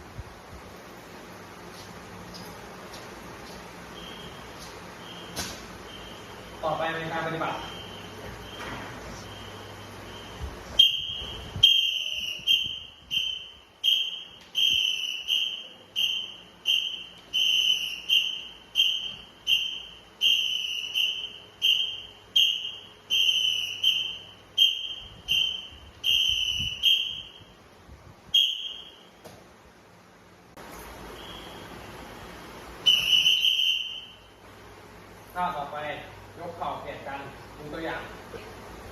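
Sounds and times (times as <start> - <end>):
whistle blasts: 4.0 - 27.6, 28.3 - 29.2, 31.1 - 32.0, 32.8 - 34.4.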